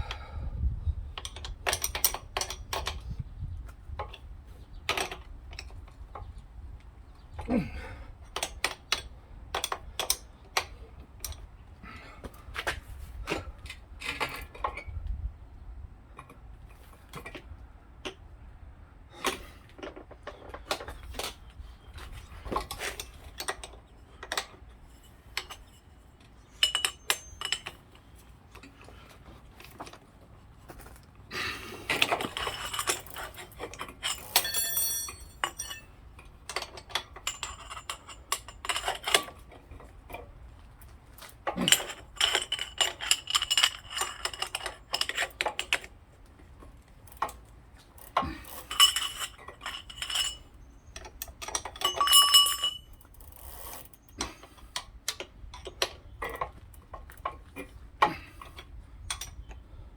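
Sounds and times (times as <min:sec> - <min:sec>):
metal tools clinking: 0:19.8 - 0:28.8, 0:31.8 - 0:40.3, 0:41.2 - 0:45.9, 0:47.0 - 0:59.6.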